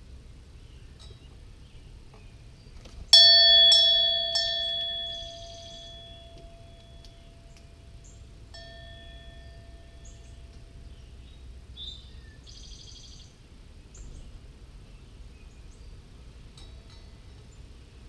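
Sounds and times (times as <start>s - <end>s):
doorbell chime: 3.2s - 7.5s, 8.5s - 10.4s
wren chirping and trilling: 3.6s - 13.3s.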